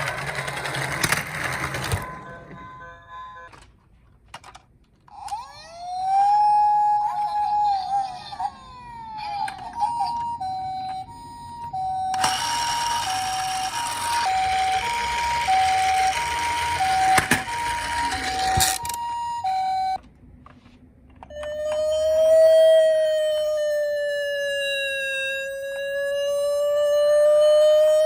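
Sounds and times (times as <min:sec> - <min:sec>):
toy siren falling tone: 0:05.1 - 0:20.0, 0:21.2 - 0:28.0
toy two-tone siren: 0:05.1 - 0:20.0, 0:21.2 - 0:28.0
toy wheels rattling on track: 0:12.2 - 0:19.0.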